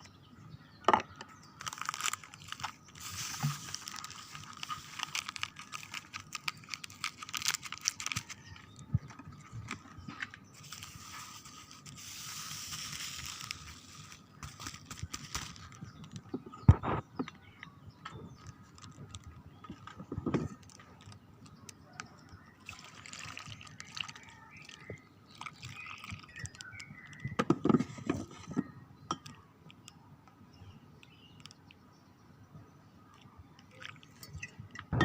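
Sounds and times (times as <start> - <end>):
utensils and containers handled: 1.6 - 16.7.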